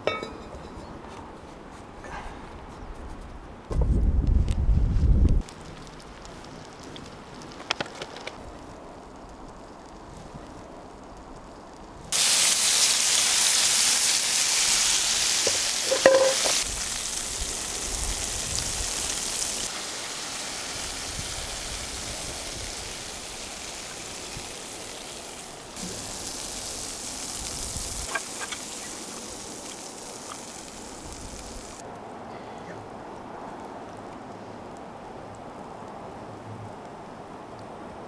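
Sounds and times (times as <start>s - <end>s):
short clink: 0.0s - 0.9s, 15.5s - 16.6s
food sizzling in a pan: 12.1s - 31.8s.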